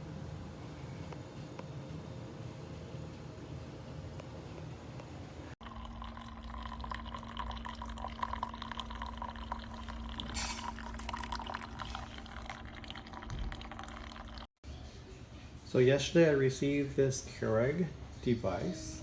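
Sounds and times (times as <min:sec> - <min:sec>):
coffee trickling into a mug: 0:05.6 - 0:14.5.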